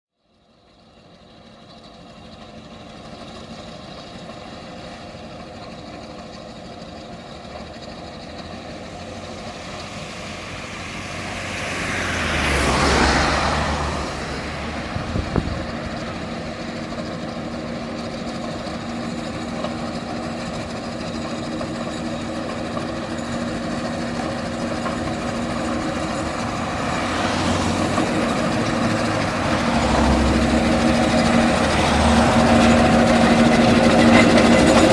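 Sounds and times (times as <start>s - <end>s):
steam roller working: 0.4s - 34.9s
loud rushing sound: 8.7s - 16.5s, 24.6s - 34.9s.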